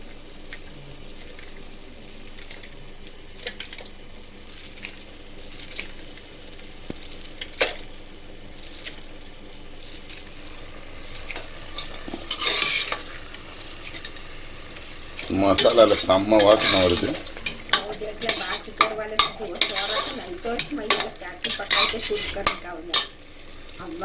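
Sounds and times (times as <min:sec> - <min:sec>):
low sizzle: 0:00.0 - 0:24.0
metal spoon scraping pan: 0:11.2 - 0:13.1, 0:15.2 - 0:23.2.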